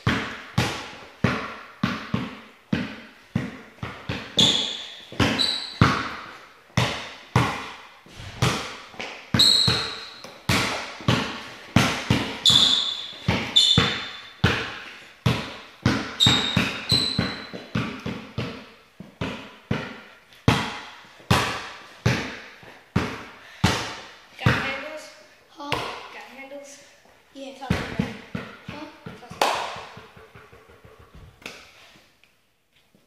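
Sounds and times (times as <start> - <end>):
basketball bouncing: 0.0 - 25.0, 25.6 - 26.2, 27.6 - 31.6
short high squeaks: 4.4 - 5.8, 9.4 - 10.2, 12.4 - 14.4, 16.2 - 17.6.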